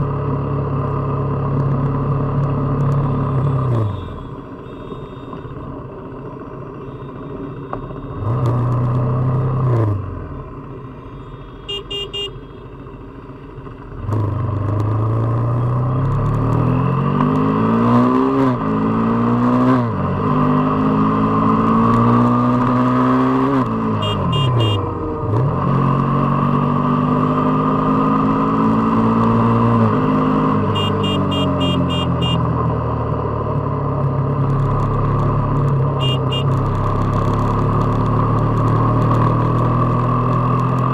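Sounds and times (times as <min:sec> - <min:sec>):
motorcycle engine revving: 0:14.0 - 0:40.9.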